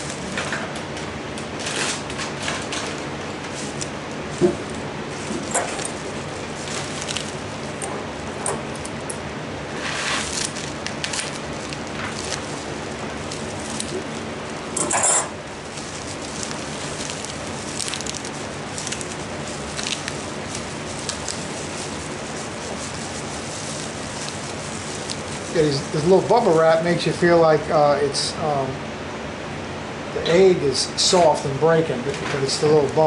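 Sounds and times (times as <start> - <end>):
steady low hum: 0.0 - 33.0
bubble wrap crinkling: 1.5 - 9.1, 9.7 - 27.1.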